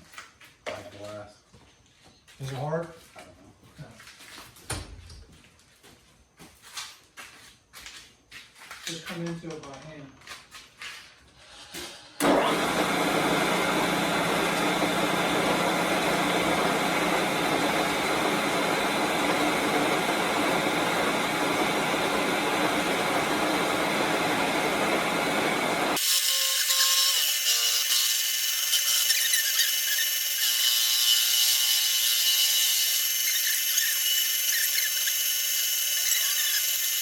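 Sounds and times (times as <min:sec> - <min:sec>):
milling machine cutting steel: 0:12.2 - 0:37.0.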